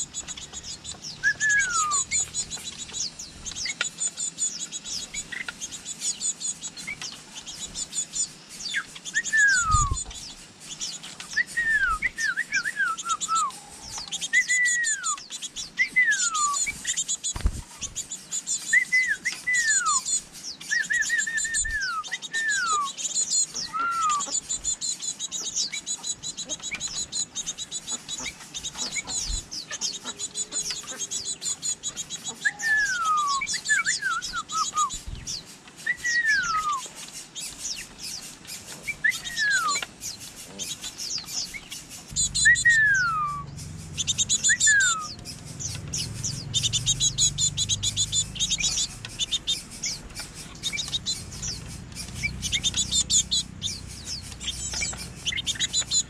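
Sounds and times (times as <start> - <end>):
birds twittering: 0.0 - 56.0
falling whistled bird calls: 0.0 - 56.0
dull low thumps: 42.1 - 48.6.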